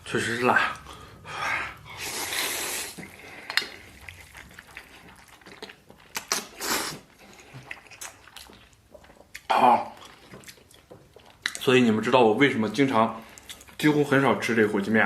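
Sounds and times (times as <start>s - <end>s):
slurping noodles: 0.6s - 11.5s.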